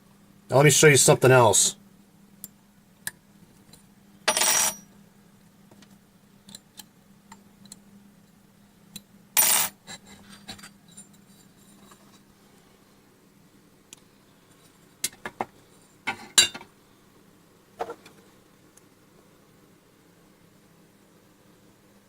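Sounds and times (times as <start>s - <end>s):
faint steady hum: 0.0s - 22.0s
small clicks and taps: 5.7s - 7.8s.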